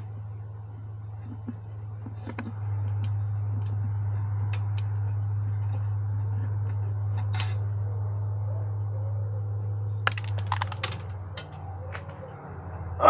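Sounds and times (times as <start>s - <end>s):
steady low hum: 0.0s - 13.0s
small parts and screws clicking: 10.1s - 12.1s.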